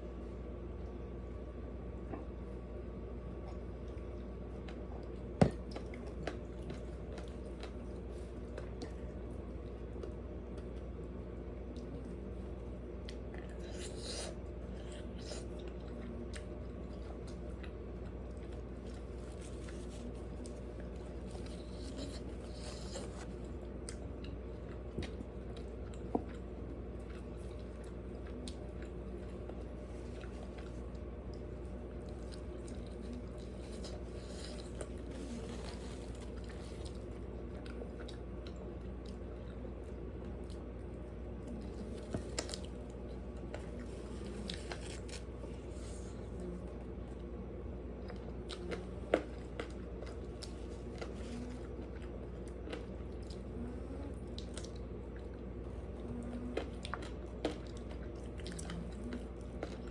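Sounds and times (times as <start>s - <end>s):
steady low hum: 0.0s - 59.9s
chewing and crunching food: 0.2s - 59.9s.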